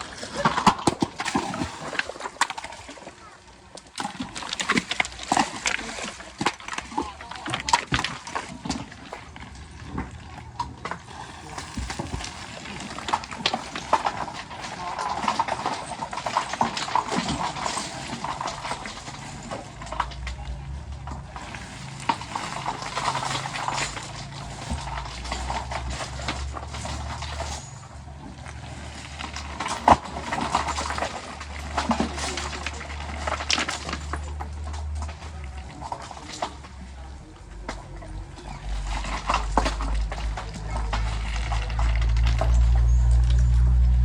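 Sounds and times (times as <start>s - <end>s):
metal clanks and knocks: 7.5s - 36.9s
heavy diesel machinery droning: 13.8s - 44.0s.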